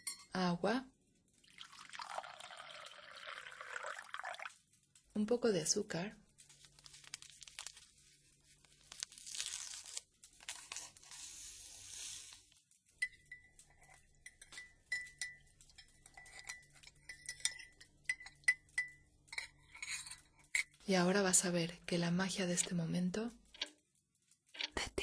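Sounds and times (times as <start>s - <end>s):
sugar pouring into cup: 1.4s - 4.6s, 11.0s - 12.4s
teaspoon clinking against cup: 13.0s - 20.7s.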